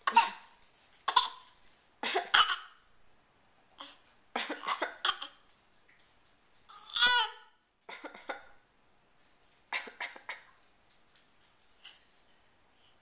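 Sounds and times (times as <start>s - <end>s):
baby coughing: 0.0s - 2.8s, 3.8s - 5.4s, 6.7s - 7.4s.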